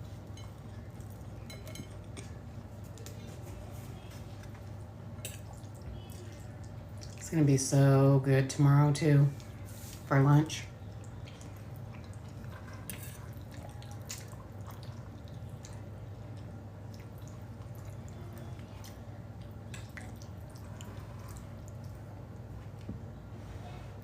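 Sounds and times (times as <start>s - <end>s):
wet chewing and mouth clicks: 10.9s - 18.2s.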